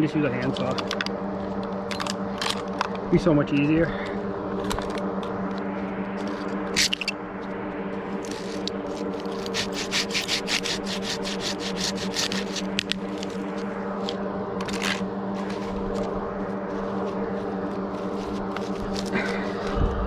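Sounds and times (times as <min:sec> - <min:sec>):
steady low hum: 0:00.0 - 0:20.0
hand saw cutting wood: 0:06.8 - 0:07.1, 0:08.2 - 0:16.1, 0:18.0 - 0:19.4.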